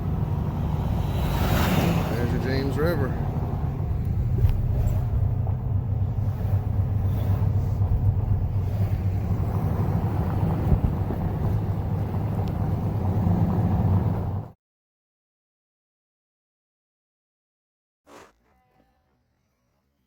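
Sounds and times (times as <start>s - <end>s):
vehicle road and engine noise: 0.0s - 14.6s.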